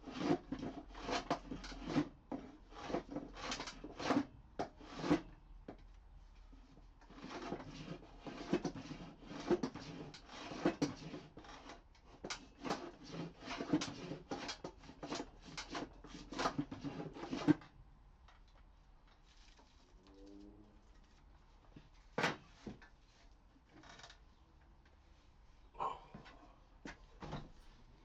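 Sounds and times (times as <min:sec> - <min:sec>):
hand plane scraping wood: 0:00.0 - 0:05.4, 0:06.6 - 0:17.7.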